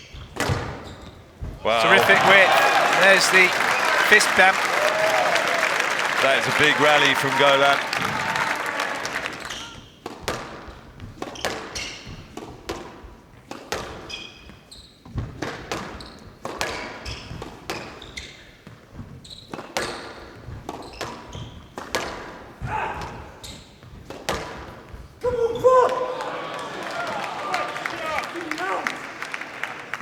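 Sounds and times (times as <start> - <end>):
squash ball hitting rackets and walls: 10.1 - 18.5, 19.2 - 25.1
shoes squeaking on court floor: 14.0 - 21.8, 23.1 - 24.0.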